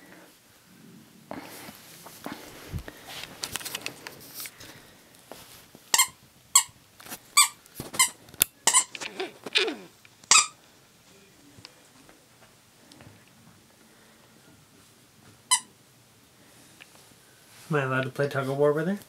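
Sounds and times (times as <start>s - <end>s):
squeaky dog toy squeaking: 5.9s - 6.8s, 7.4s - 10.6s.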